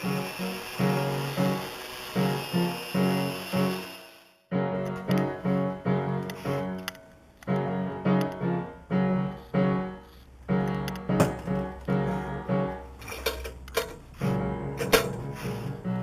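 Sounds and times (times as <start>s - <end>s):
piano chords: 0.0s - 16.0s.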